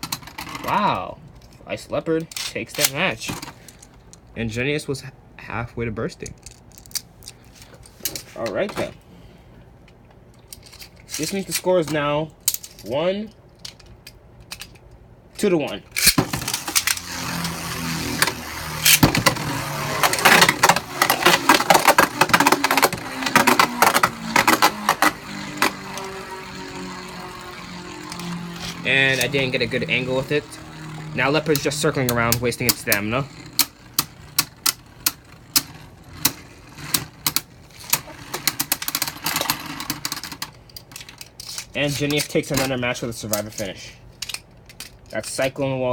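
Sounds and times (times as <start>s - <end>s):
spinning tops whirring: 15.9s - 40.5s.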